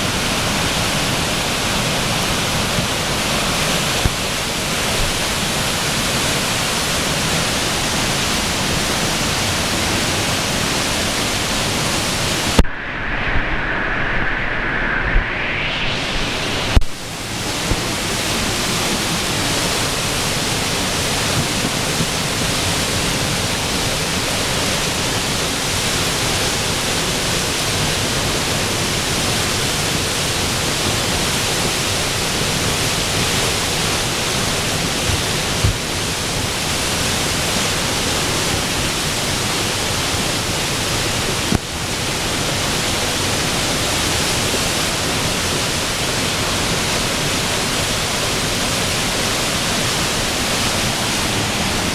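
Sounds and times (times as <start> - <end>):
floodwater rushing: 16.0 - 51.9.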